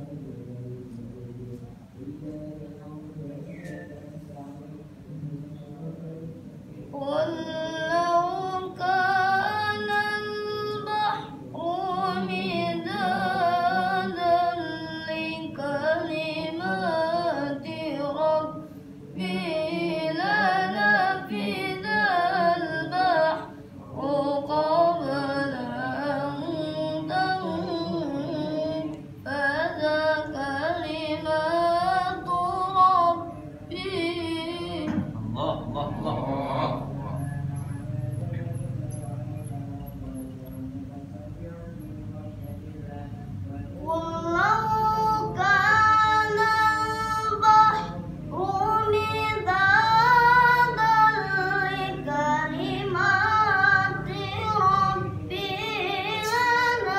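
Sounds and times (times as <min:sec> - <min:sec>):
child reciting melodically: 0:07.0 - 0:38.1, 0:43.8 - 0:56.9.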